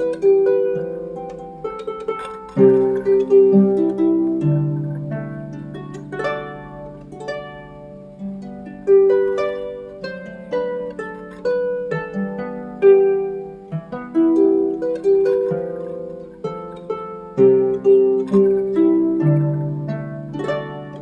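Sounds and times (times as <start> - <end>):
plucked harp-like melody: 0.0 - 21.0.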